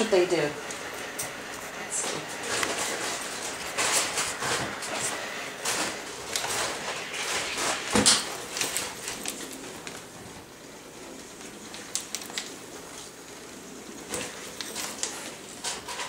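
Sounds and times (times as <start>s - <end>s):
steam mop swishing on floor: 0.0s - 10.5s.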